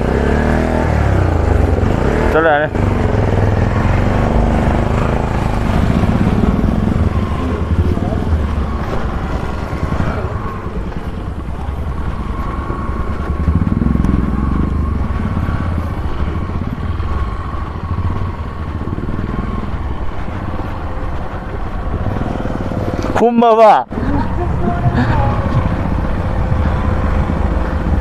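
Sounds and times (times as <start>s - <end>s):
motorcycle engine rumble: 0.0s - 28.0s
wind buffeting on microphone: 23.9s - 28.0s.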